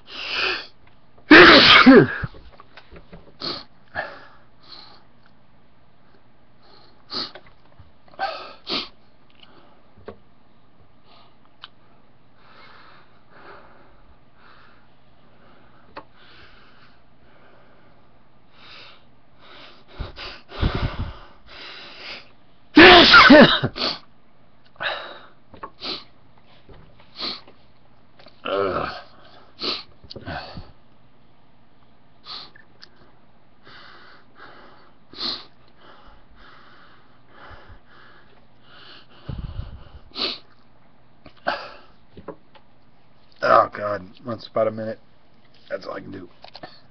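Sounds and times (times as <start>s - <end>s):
person sneezing: 1.3s - 2.3s, 22.8s - 24.0s
person sniffing: 6.8s - 7.4s, 8.5s - 9.0s, 25.8s - 26.1s, 27.1s - 27.5s, 29.6s - 30.5s, 38.8s - 40.6s.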